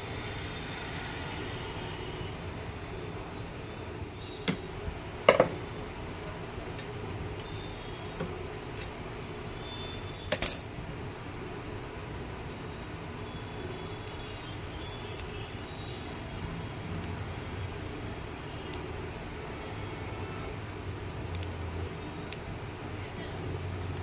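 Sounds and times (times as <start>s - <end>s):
metallic clinks and knocks: 10.3s - 10.8s.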